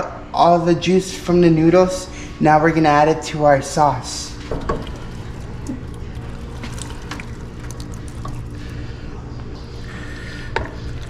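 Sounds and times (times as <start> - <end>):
low hum: 3.0 - 11.0
pasta stirred in sauce: 4.6 - 9.0.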